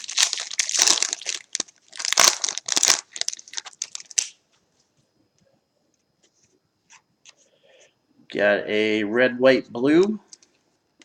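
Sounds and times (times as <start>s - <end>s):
plastic wrapper crinkling and tearing: 0.0s - 4.4s.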